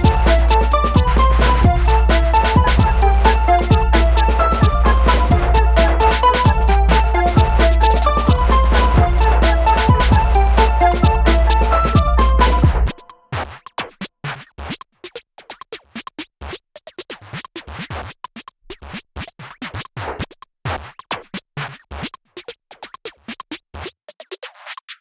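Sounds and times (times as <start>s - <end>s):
choppy stuttering electronic music: 0.0s - 13.1s.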